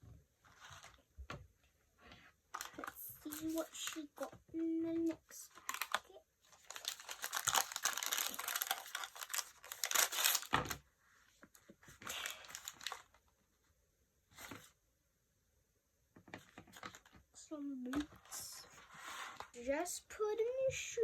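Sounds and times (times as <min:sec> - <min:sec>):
packet tearing and crinkling: 0:02.6 - 0:04.1, 0:05.4 - 0:10.8, 0:12.0 - 0:13.2.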